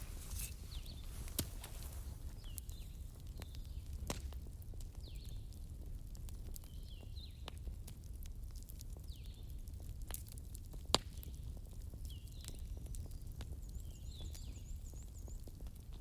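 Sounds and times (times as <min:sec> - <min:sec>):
bonfire crackling: 0:00.0 - 0:06.6
fire popping and snapping: 0:00.0 - 0:14.0
low rumble of burning: 0:00.0 - 0:16.0.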